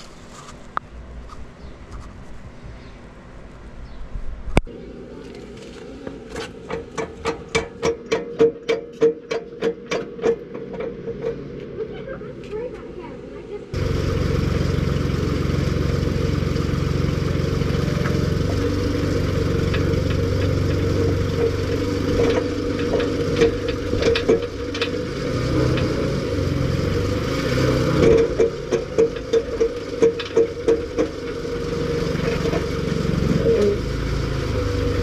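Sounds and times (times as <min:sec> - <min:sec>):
sharp knocks and clatter: 0:06.3 - 0:11.5, 0:16.6 - 0:33.9
engine running at low speed: 0:13.6 - 0:35.0.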